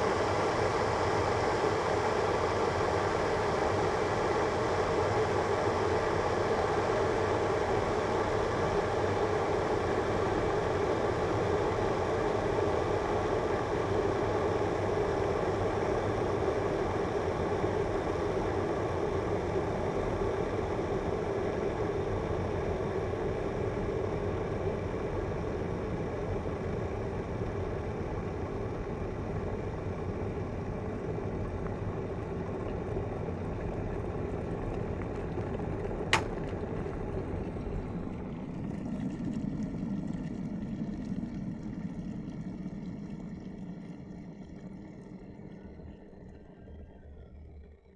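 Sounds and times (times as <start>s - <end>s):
electric kettle boiling: 0.0s - 36.5s.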